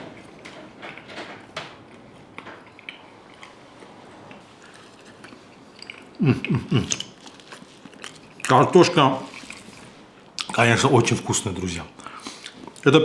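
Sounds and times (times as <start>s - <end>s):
person chewing fried potatoes: 0.2s - 12.9s
wet mouth clicks: 5.8s - 8.5s, 9.3s - 10.6s.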